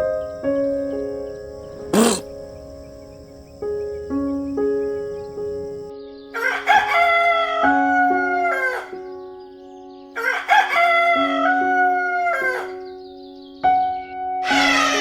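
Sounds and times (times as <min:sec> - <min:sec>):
background music with held notes: 0:00.0 - 0:15.0
rooster crowing: 0:06.4 - 0:09.0, 0:10.2 - 0:12.9, 0:14.4 - 0:15.0.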